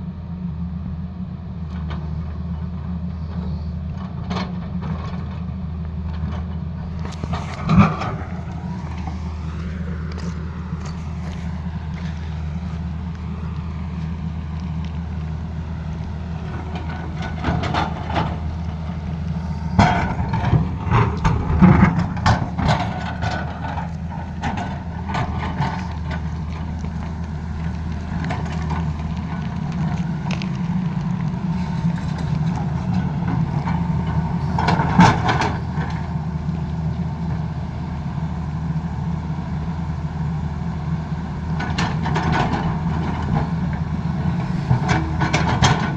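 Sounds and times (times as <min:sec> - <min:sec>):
excavator diesel engine running: 0:00.0 - 0:45.9
digging knocks and scrapes: 0:06.8 - 0:36.2.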